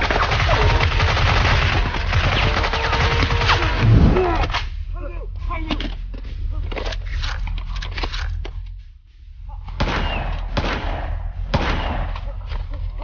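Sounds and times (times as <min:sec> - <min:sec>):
rapid machine-gun fire: 0:00.0 - 0:04.0, 0:09.8 - 0:12.1.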